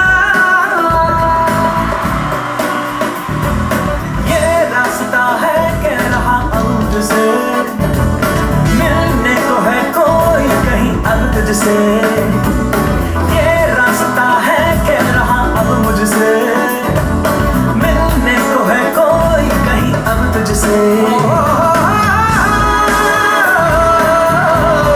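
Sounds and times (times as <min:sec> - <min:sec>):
guitar: 0:00.0 - 0:24.9
wavering vocal melody: 0:00.0 - 0:24.9
deep pulsing bass line: 0:03.3 - 0:04.6.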